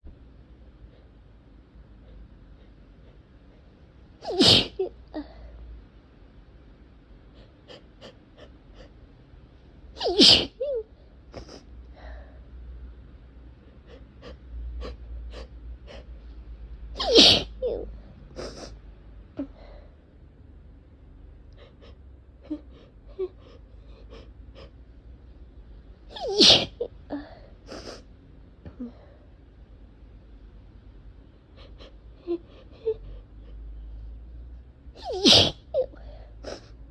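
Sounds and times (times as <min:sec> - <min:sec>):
person sneezing: 0:04.2 - 0:04.9, 0:10.0 - 0:10.6, 0:17.0 - 0:17.6, 0:26.2 - 0:26.8, 0:35.0 - 0:35.7.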